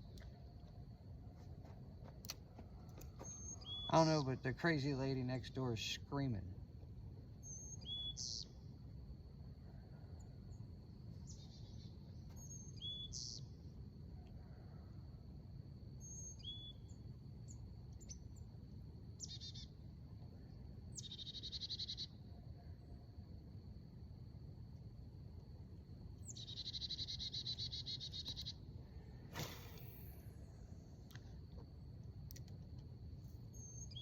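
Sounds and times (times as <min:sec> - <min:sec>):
steady high-pitched whine: 0:00.0 - 0:34.0
high whistled bird calls: 0:03.2 - 0:04.3, 0:07.4 - 0:08.5.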